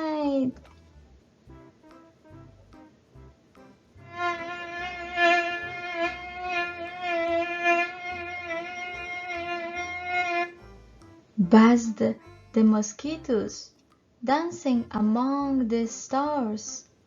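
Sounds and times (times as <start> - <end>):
mosquito buzzing: 4.0 - 11.2.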